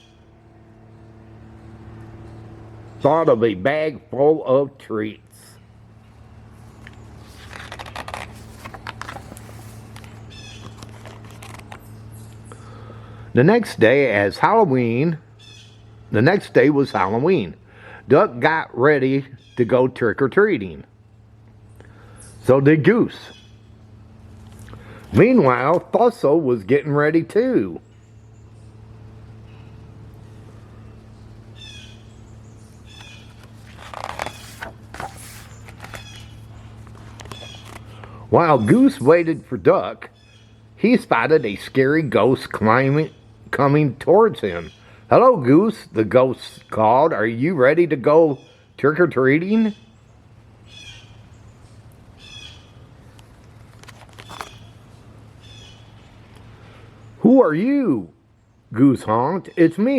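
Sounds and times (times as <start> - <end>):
birds calling: 0.0 - 18.1, 20.9 - 59.9
steady low hum: 0.0 - 59.9
book pages rustling: 6.5 - 12.0, 33.0 - 38.2, 53.1 - 54.7
bird call: 30.6 - 38.2.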